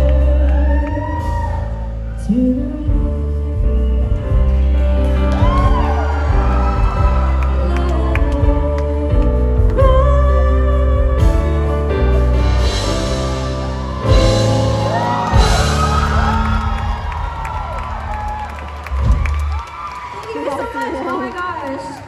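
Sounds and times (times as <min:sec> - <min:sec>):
woman singing a ballad: 0:00.0 - 0:16.9
band with heavy bass: 0:00.0 - 0:19.7.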